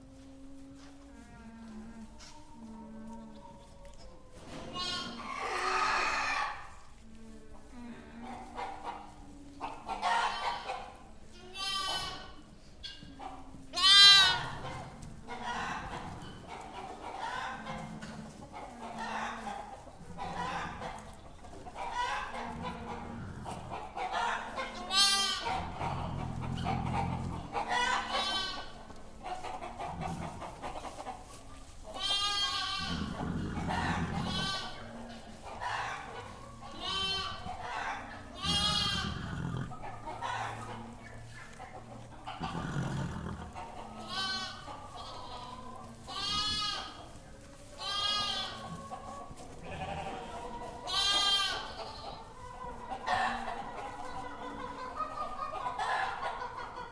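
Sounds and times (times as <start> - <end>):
goats bleating: 11.5 - 12.4, 13.8 - 14.7, 21.8 - 28.8, 31.9 - 40.6, 42.3 - 47.1, 47.8 - 48.9, 49.5 - 52.3.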